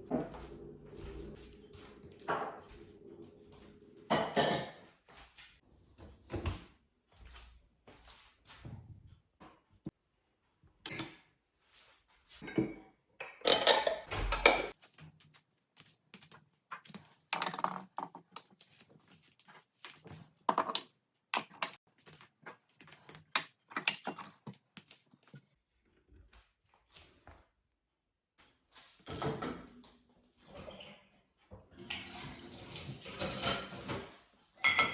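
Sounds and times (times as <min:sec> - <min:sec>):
dishes and utensils clattering: 0:04.0 - 0:05.0, 0:12.4 - 0:14.8, 0:23.3 - 0:24.4, 0:29.1 - 0:31.1, 0:31.8 - 0:34.9.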